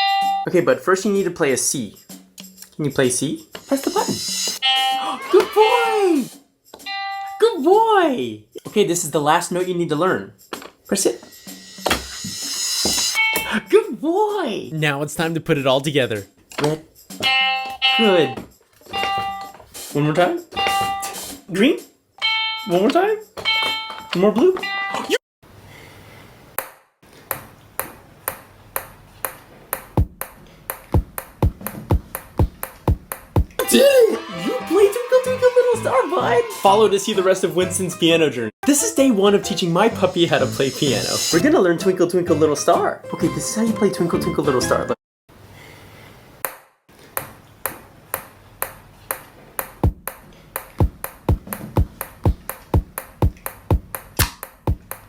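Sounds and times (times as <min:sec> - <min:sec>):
deep kick drum thumps: 0:30.0 - 0:30.3, 0:31.0 - 0:33.6, 0:49.8 - 0:50.2, 0:50.8 - 0:55.0
electronic beat sharp clicks: 0:49.6 - 0:55.0.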